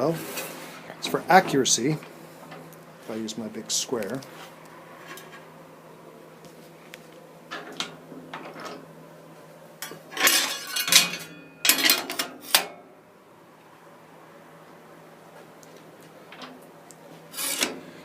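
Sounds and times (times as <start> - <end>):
metallic clattering and scraping: 9.8 - 12.7, 17.3 - 18.0.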